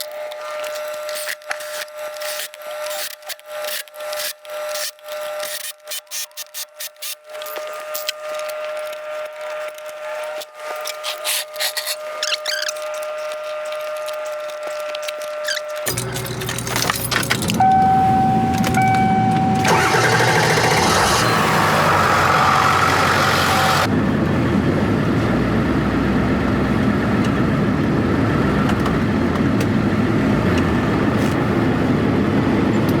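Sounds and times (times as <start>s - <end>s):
steady high tone: 15.9s - 23.9s
diesel engine cranking and idling: 15.9s - 33.0s.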